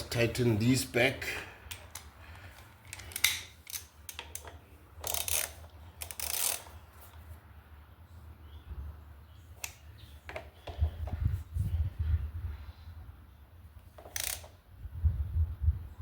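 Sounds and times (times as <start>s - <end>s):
hand tools clicking on metal: 1.7s - 6.7s.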